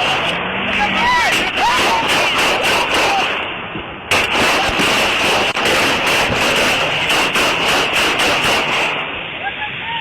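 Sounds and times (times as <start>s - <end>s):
rapid gunshots: 1.3s - 3.5s, 4.1s - 9.1s.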